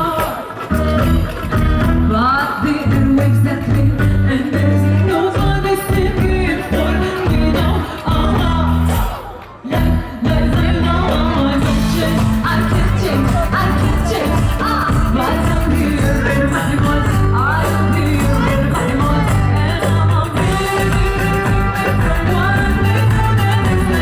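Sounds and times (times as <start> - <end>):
live band playing amplified music: 0.0 - 24.0
person singing: 0.0 - 24.0
heavy bass notes: 0.7 - 9.1, 9.8 - 24.0.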